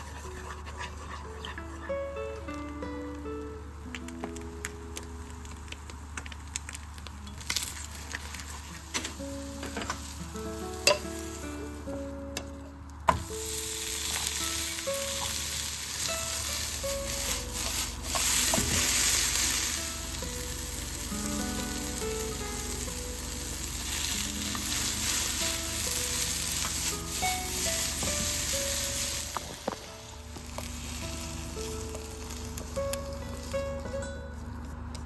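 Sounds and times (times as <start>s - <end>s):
soft background music: 0.0s - 35.0s
egg sizzling in frying pan: 3.9s - 12.0s, 13.1s - 33.9s.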